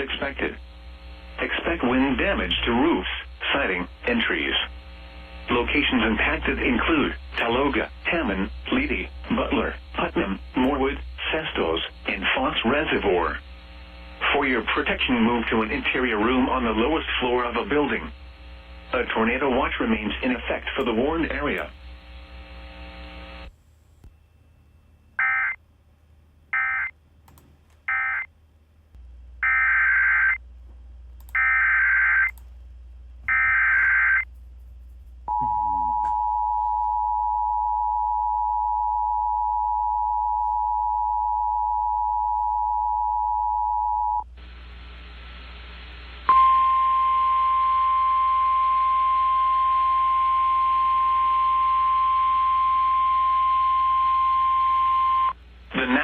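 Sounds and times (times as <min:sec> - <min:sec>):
steady warning alarm tone: 0:33.3 - 0:34.2.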